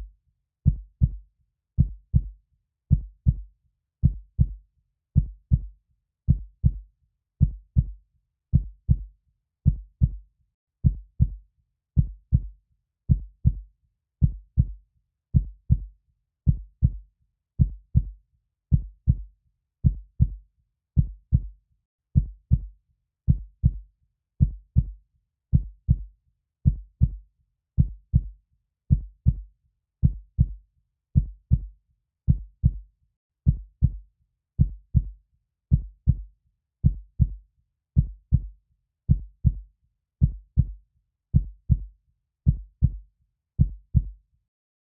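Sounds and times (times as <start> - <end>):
heartbeat thumps: 0.7 - 1.2, 1.8 - 2.3, 4.0 - 4.6, 5.2 - 5.7, 6.3 - 6.8, 9.7 - 10.2, 10.8 - 11.4, 13.1 - 13.6, 15.4 - 15.9, 16.5 - 17.0, 17.6 - 18.1, 18.7 - 19.2, 19.8 - 20.4, 22.2 - 22.7, 23.3 - 23.8, 24.4 - 24.9, 26.7 - 27.2, 27.8 - 28.3, 28.9 - 29.4, 30.0 - 30.6, 31.2 - 31.7, 32.3 - 32.8, 33.5 - 34.0, 34.6 - 37.4, 38.0 - 38.5, 39.1 - 39.6, 40.2 - 40.8, 41.4 - 41.9, 42.5 - 43.0, 43.6 - 44.2.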